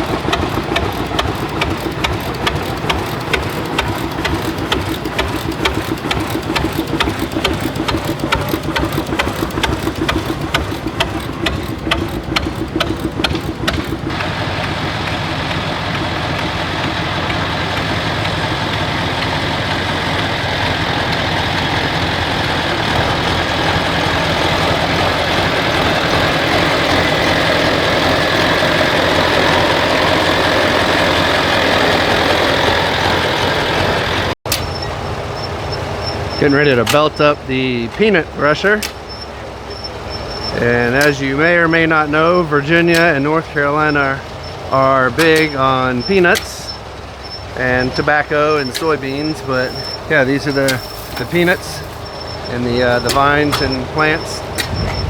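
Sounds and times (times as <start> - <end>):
engine popping beat: 0.0 - 55.0
smooth machine noise: 0.0 - 55.0.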